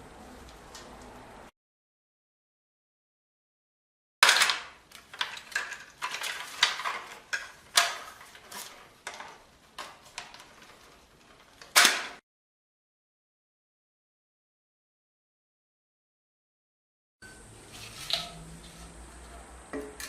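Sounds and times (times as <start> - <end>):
clicks and knocks of hard parts: 4.2 - 12.2.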